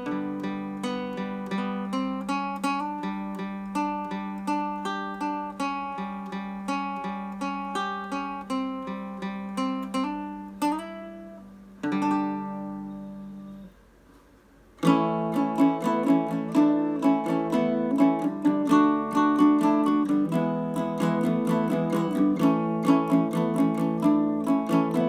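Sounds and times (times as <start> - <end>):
ukulele picking single notes: 0.0 - 25.0.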